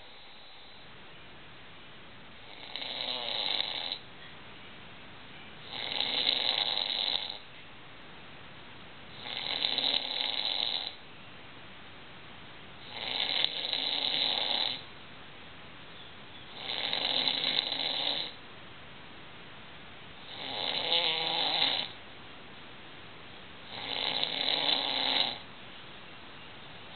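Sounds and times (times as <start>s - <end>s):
man snoring: 2.5s - 4.0s, 5.6s - 7.4s, 9.2s - 11.0s, 12.8s - 14.8s, 16.6s - 18.4s, 20.2s - 22.0s, 23.7s - 25.4s.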